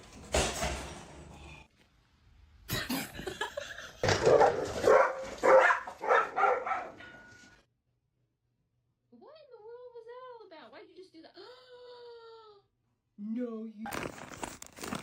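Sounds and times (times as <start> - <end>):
dog barking: 4.2 - 7.3
rustling: 13.9 - 15.0.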